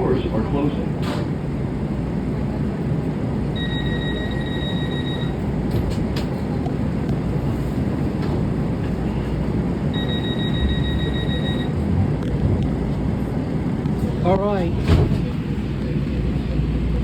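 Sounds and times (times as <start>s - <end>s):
train rumbling: 0.0s - 17.0s
high electronic beep: 10.0s - 11.7s.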